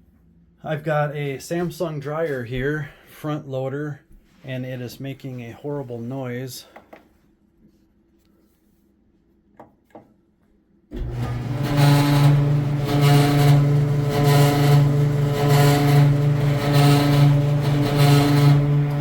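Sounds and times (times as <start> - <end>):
dryer motor hum: 10.9 - 19.0
rhythmic grinding noise: 11.0 - 19.0.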